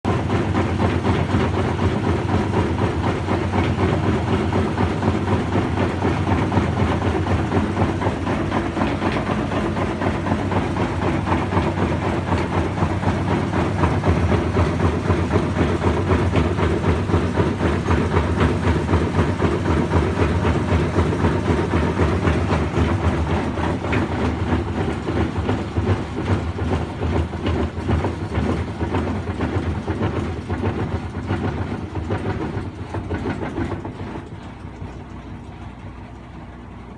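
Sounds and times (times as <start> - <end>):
washing machine rumbling and rattling: 0.0 - 36.9.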